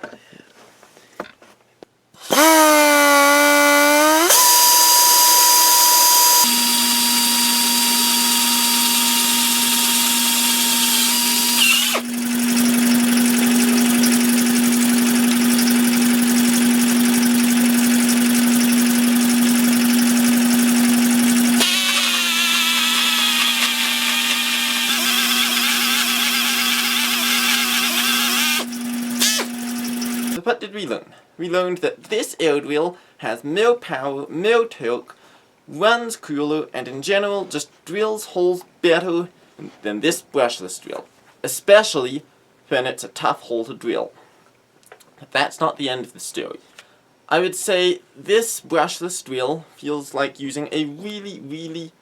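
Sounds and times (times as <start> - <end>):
power drill whining: 2.2 - 30.4.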